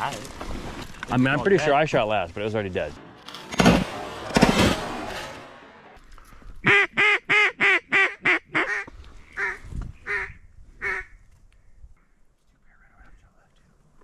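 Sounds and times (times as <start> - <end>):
duck call quacks: 6.6 - 11.1.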